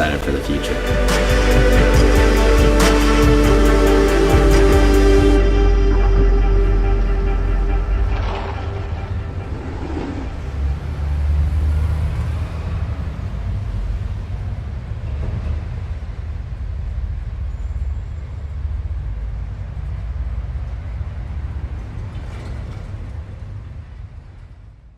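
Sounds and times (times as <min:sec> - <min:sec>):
low steady rumble: 0:04.3 - 0:11.1.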